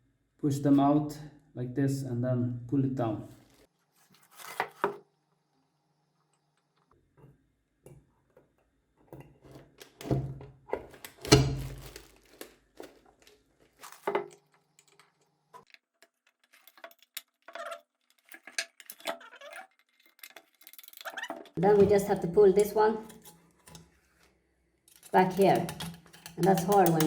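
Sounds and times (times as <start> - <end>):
metal parts and tools clinking: 10.8 - 23.8, 24.9 - 27.0.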